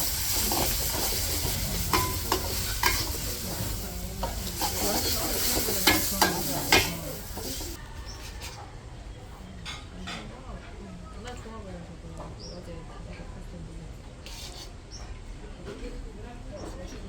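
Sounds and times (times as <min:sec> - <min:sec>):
food sizzling in hot oil: 0:00.0 - 0:07.8
metal utensil clinking on pan: 0:00.3 - 0:07.8.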